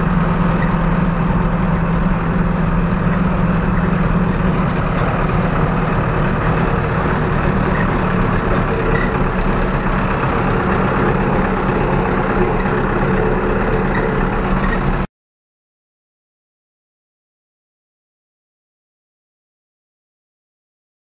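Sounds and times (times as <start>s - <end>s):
tractor diesel engine running: 0.0s - 15.1s.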